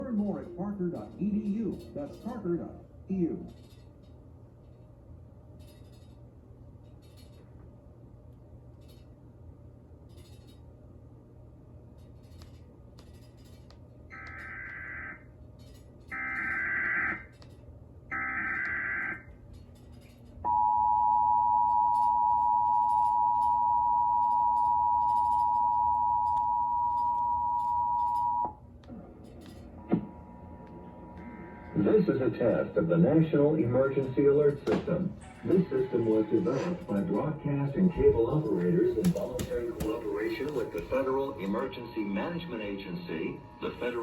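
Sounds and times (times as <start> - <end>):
two-tone attention signal: 20.5 - 28.6.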